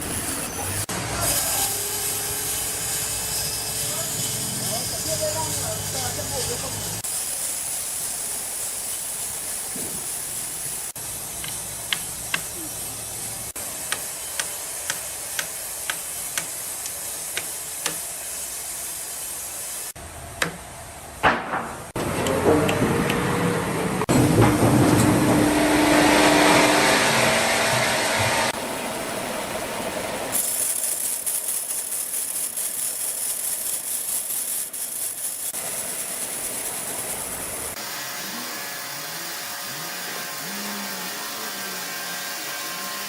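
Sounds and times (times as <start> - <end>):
sawmill machinery hissing: 0.0 - 21.2, 21.9 - 43.0
machine hum: 21.9 - 30.4.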